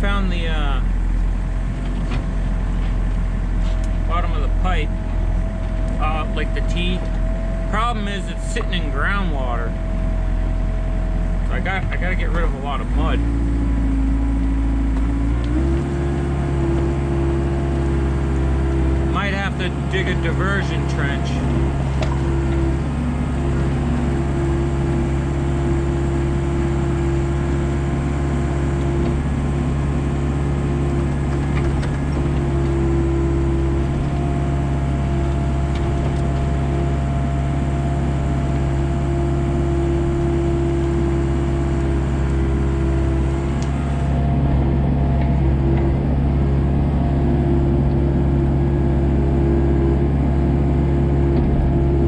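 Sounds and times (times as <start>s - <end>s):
excavator diesel engine running: 0.0s - 52.0s.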